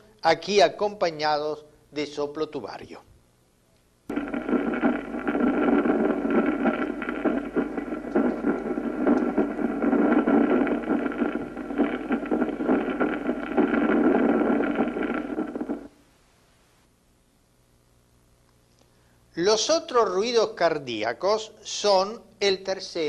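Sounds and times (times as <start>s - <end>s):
muffled heartbeat: 4.1s - 15.9s.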